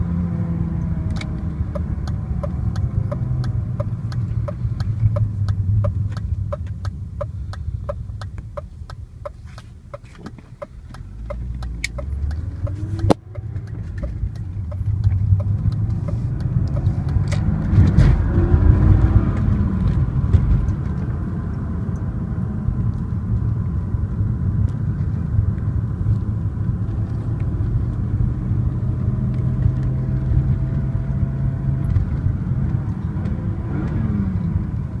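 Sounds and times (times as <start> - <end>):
car engine rumbling: 0.0 - 35.0
regular ticking: 0.7 - 17.7.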